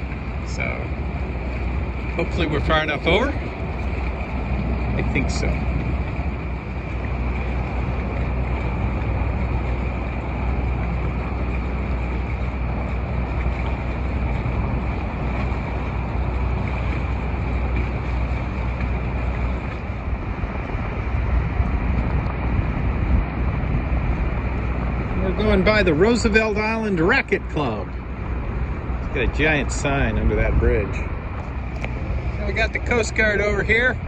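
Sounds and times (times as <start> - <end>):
steady low drone: 0.0 - 34.0
water moving past hull: 0.0 - 34.0
wind buffeting microphone: 0.0 - 34.0.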